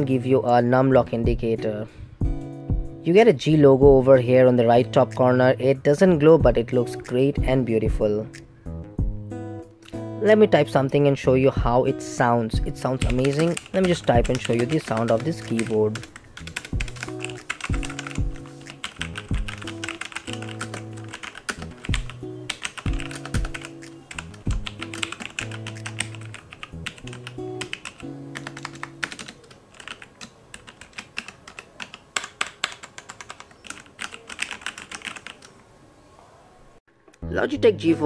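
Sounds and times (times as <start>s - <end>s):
background music with low notes: 0.0s - 29.3s, 37.1s - 38.0s
mechanical keyboard typing clicks: 13.0s - 35.5s.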